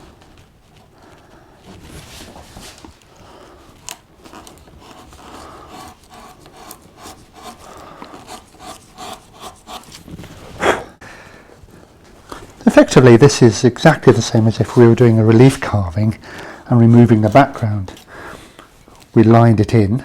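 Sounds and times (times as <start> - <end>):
gouge scraping wood: 3.8 - 10.6.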